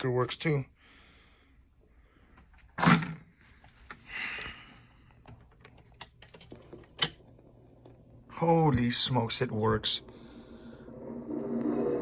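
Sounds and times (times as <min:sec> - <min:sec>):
faint hum: 0:06.5 - 0:12.0.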